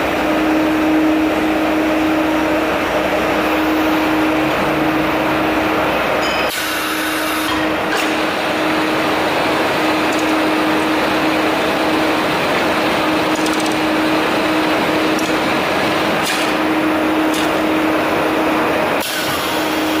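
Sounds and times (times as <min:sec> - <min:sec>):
machine humming with steady tone: 0:00.0 - 0:20.0
sharp mechanical clicks: 0:13.3 - 0:13.9.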